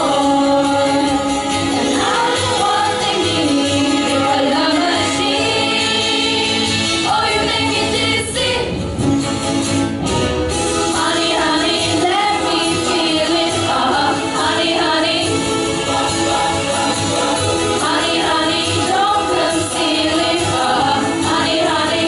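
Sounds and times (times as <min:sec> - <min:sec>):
teenagers singing pop song: 0:00.0 - 0:08.8, 0:10.9 - 0:22.0.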